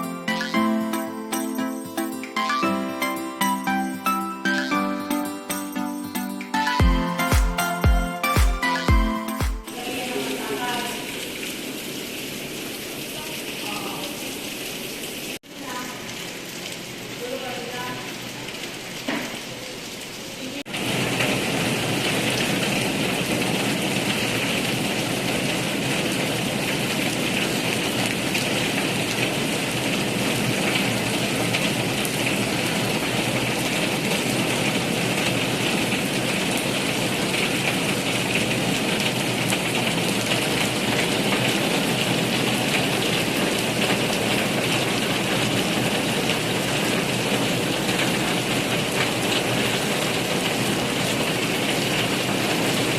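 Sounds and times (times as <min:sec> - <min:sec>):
steady rain patter: 0:06.8 - 0:52.9.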